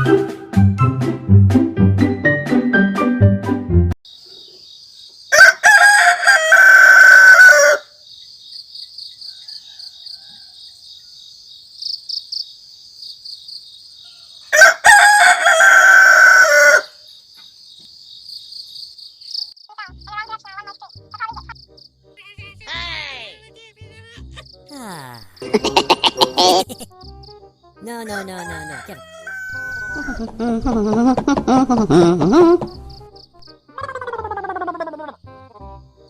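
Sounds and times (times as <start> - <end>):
crickets chirring: 4.1 - 14.7, 15.4 - 22.1, 23.6 - 30.2, 32.4 - 33.6
rooster crowing: 5.3 - 8.0, 9.2 - 11.3, 14.0 - 17.0, 28.1 - 30.3.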